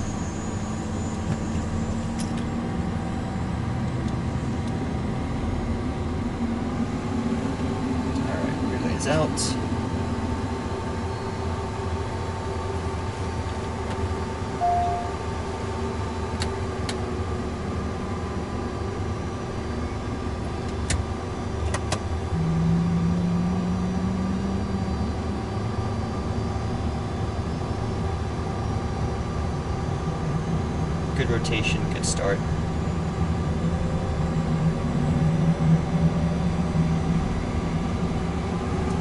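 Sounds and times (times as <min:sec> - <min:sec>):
jet engine hum and whine: 0:00.0 - 0:39.0
rising engine tone: 0:14.5 - 0:16.0, 0:22.3 - 0:26.8
short beep: 0:14.6 - 0:15.2.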